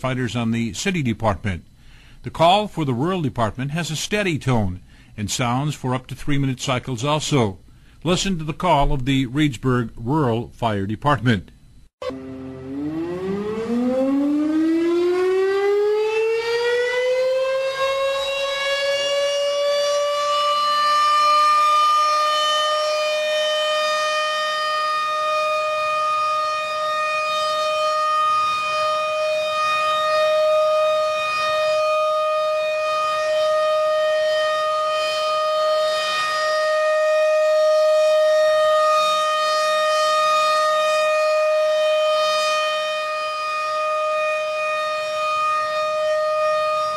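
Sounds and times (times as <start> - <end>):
fire siren winding up: 12.0 - 46.9.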